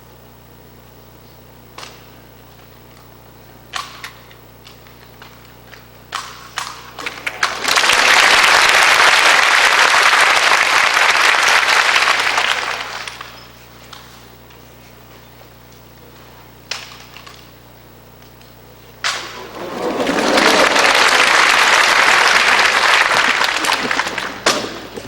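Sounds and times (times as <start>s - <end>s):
audience applauding: 7.0s - 13.5s, 19.2s - 25.0s.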